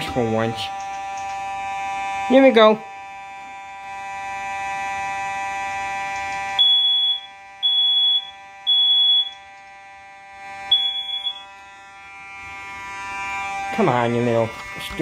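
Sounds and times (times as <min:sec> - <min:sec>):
buzzing multi-tone sound: 0:00.0 - 0:15.0
smoke detector beeping: 0:05.0 - 0:12.1.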